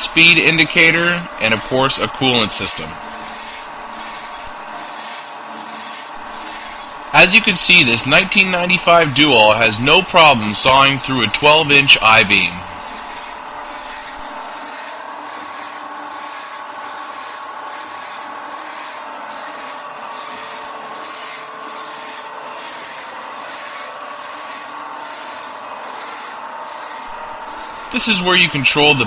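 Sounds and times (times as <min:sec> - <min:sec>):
bandsaw blade grinding steel: 0:00.0 - 0:29.0
machine hum: 0:00.0 - 0:29.0.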